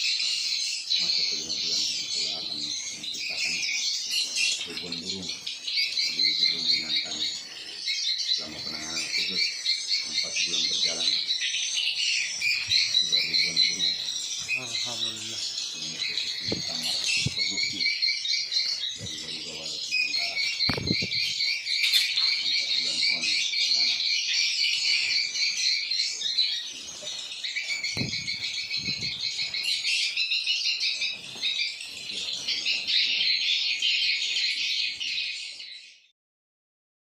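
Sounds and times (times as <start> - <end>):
swiftlets twittering chorus: 0.0 - 35.8.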